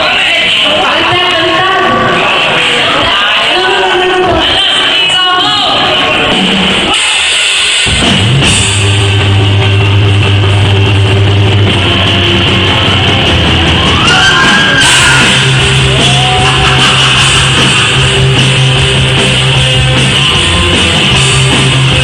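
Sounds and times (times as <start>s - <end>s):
electric guitar: 5.8s - 22.0s
drum kit with cymbals: 6.3s - 10.5s, 14.8s - 22.0s.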